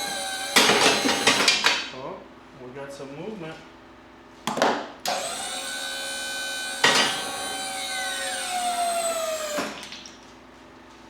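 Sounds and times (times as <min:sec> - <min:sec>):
hydraulic pump whining: 0:00.0 - 0:01.7, 0:05.1 - 0:09.9.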